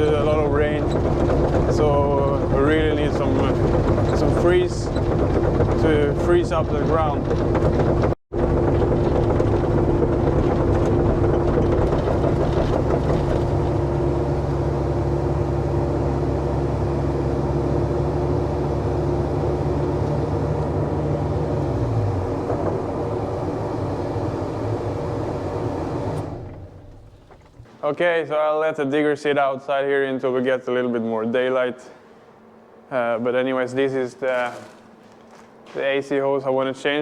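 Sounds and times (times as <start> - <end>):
excavator diesel engine running: 0.0 - 27.8, 34.2 - 36.0
constant whine: 0.0 - 27.9.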